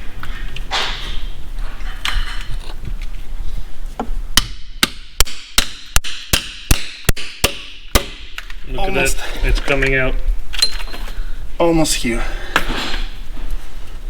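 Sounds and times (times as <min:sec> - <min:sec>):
hammer strikes: 0:04.4 - 0:08.4.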